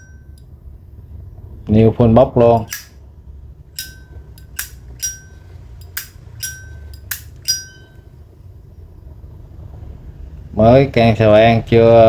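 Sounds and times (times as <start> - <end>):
lighter lid clinking open and shut: 2.6 - 3.0, 3.8 - 7.9.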